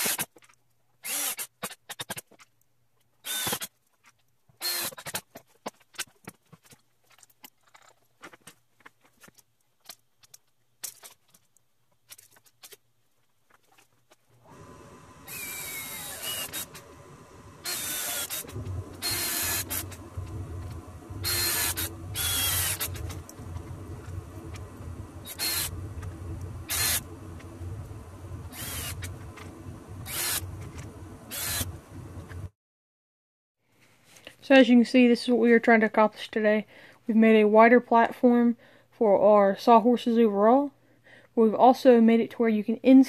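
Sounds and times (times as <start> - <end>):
power tool whining: 3.2 - 3.7, 14.4 - 32.5
steady hum: 14.4 - 32.6.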